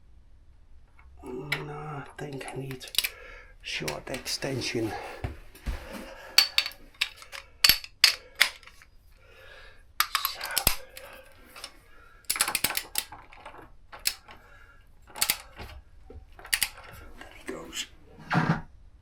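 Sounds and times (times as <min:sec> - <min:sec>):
metal hand tools clinking: 0:02.3 - 0:03.2, 0:06.2 - 0:08.9, 0:10.0 - 0:14.4, 0:15.0 - 0:15.8, 0:16.4 - 0:17.4.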